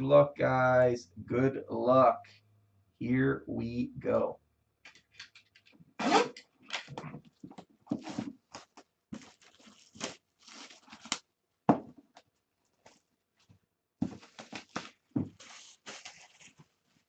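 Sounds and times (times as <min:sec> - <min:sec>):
packaging tearing and crinkling: 0:08.0 - 0:11.3, 0:14.2 - 0:16.6.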